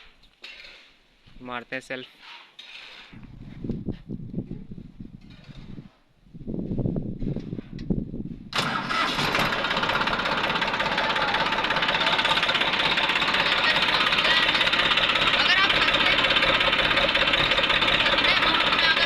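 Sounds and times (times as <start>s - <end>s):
diesel engine idling: 8.6s - 19.0s
starter motor cranking: 8.6s - 19.0s.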